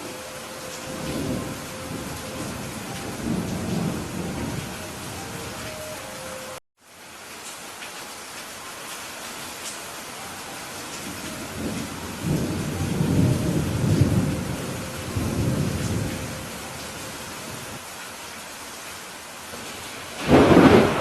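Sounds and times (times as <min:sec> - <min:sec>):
thunder rumbling: 0:00.0 - 0:06.0, 0:11.0 - 0:17.8, 0:20.1 - 0:21.0
steady rain: 0:00.0 - 0:21.0.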